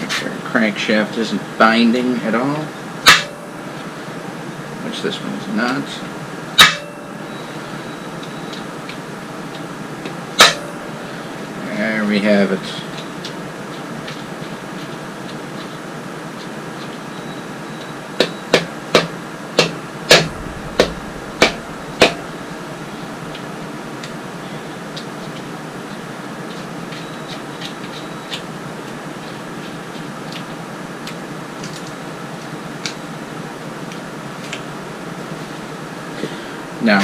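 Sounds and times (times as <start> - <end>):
knocks on metal: 18.6 - 22.4.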